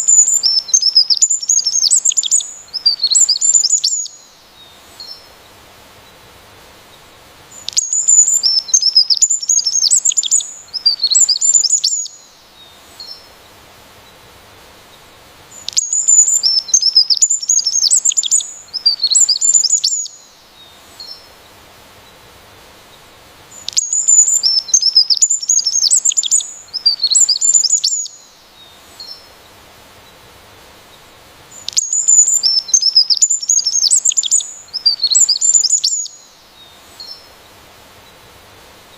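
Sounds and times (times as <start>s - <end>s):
songbird twittering and warbling: 0.0s - 5.3s, 7.5s - 13.3s, 15.5s - 21.3s, 23.5s - 29.4s, 31.5s - 38.2s.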